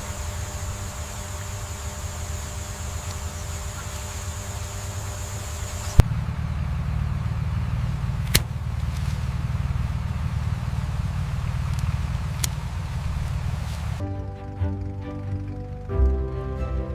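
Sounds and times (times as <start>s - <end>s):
vehicle engine humming: 0.0s - 16.9s
sharp clicks: 8.2s - 9.0s, 11.5s - 13.6s.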